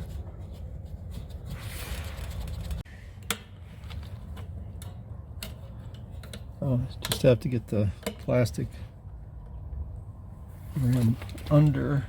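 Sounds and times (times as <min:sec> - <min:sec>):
rubbing of handled parts: 0:00.0 - 0:02.9
steady low rumble: 0:00.0 - 0:12.0.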